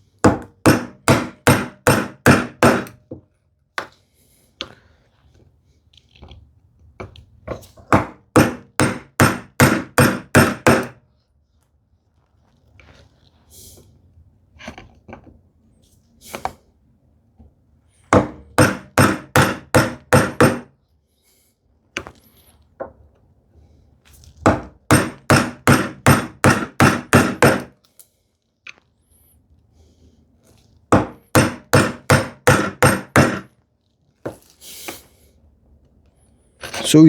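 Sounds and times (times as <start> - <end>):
chisel chopping wood: 0.3 - 3.0, 7.9 - 11.0, 18.1 - 20.7, 24.5 - 27.7, 30.9 - 33.5.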